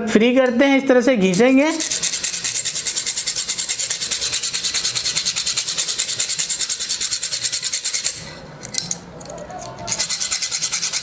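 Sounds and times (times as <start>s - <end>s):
metal file rasping on metal: 1.3s - 8.4s, 9.9s - 11.0s.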